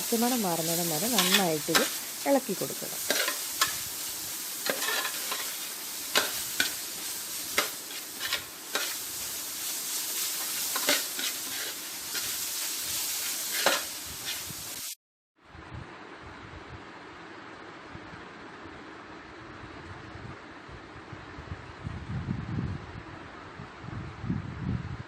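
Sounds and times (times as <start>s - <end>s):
food sizzling in hot oil: 0.0s - 15.0s
spoon scraping against pan: 1.2s - 2.0s, 3.0s - 3.9s, 4.6s - 9.1s, 10.2s - 14.5s.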